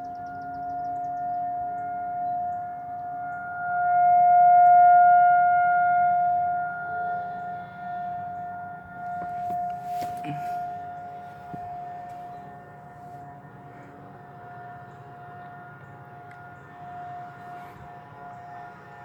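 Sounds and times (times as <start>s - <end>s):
rotating tornado siren: 0.0s - 19.0s.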